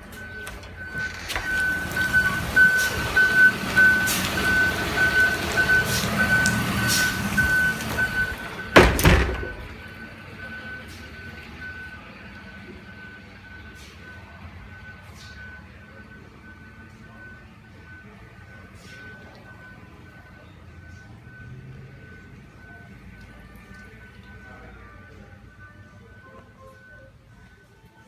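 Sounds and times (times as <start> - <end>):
loud clattering activity: 0.0 - 10.0
heavy thunk: 8.8 - 9.9.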